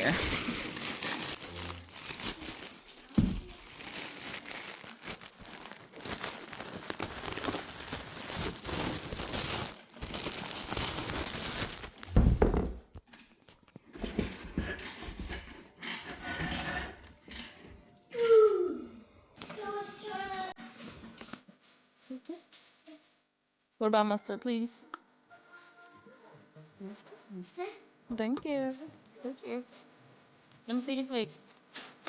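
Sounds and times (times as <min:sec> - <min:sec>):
packaging rustling and scraping: 0:00.0 - 0:13.0, 0:13.7 - 0:17.6
heavy thump: 0:12.1 - 0:12.9.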